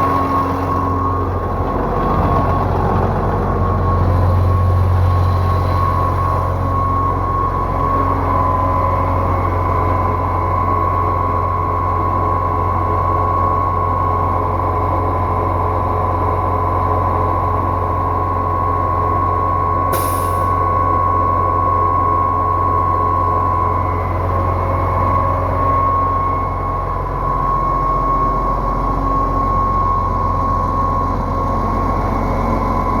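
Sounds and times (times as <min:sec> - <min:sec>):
constant high whine: 0:00.0 - 0:33.0
deep engine drone: 0:00.0 - 0:33.0
brief high hiss: 0:19.9 - 0:20.6.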